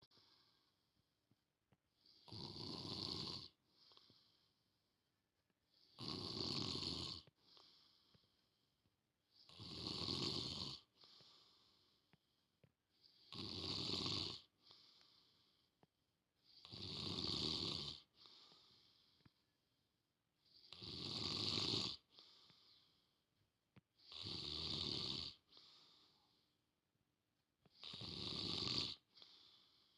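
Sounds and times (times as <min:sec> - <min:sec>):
soft breathing: 0:00.0 - 0:02.3, 0:03.5 - 0:05.0, 0:07.2 - 0:09.5, 0:10.8 - 0:13.3, 0:14.4 - 0:16.7, 0:18.1 - 0:19.6, 0:22.0 - 0:23.2, 0:25.4 - 0:26.6, 0:29.0 - 0:29.9
man snoring: 0:02.0 - 0:03.6, 0:05.8 - 0:07.3, 0:09.4 - 0:10.9, 0:13.1 - 0:14.5, 0:16.5 - 0:18.1, 0:20.5 - 0:22.1, 0:24.0 - 0:25.7, 0:27.7 - 0:29.4.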